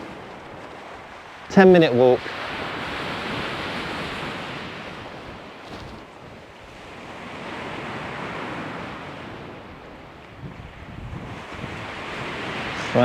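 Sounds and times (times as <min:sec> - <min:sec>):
waves breaking on shingle: 0:00.0 - 0:09.0
wind buffeting microphone: 0:00.0 - 0:13.0.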